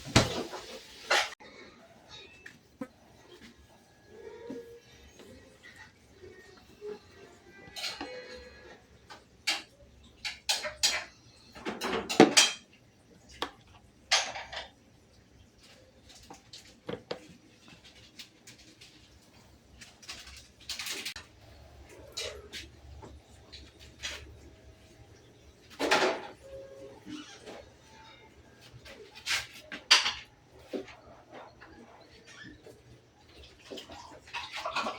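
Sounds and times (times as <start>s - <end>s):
dishes clinking and clattering: 0.0s - 1.9s, 4.3s - 12.8s, 13.4s - 14.8s, 18.1s - 34.9s.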